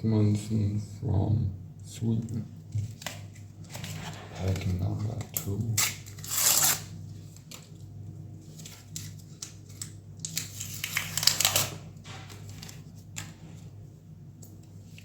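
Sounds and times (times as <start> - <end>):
wrapper crinkling and tearing: 2.9 - 7.8, 8.5 - 11.8.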